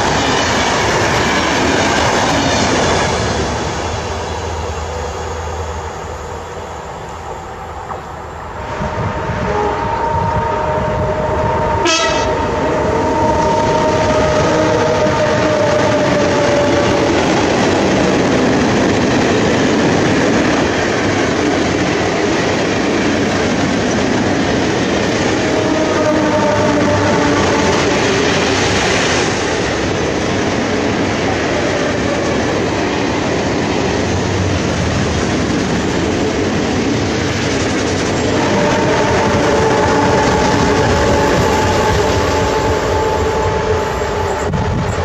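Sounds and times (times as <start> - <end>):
train rumbling past: 0.0 - 45.0
train horn: 8.7 - 17.0, 25.4 - 28.7, 38.2 - 45.0.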